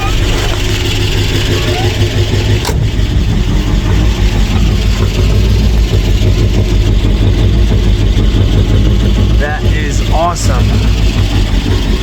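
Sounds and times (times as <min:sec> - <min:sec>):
car engine running: 0:00.0 - 0:12.0.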